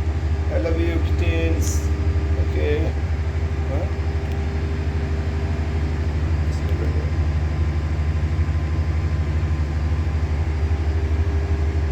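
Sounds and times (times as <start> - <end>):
machine humming: 0.0 - 11.9.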